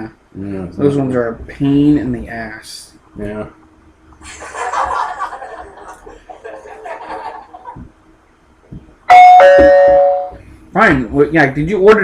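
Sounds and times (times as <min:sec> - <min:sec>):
canned audience laughter: 0:04.2 - 0:07.8
two-tone doorbell: 0:09.1 - 0:10.4.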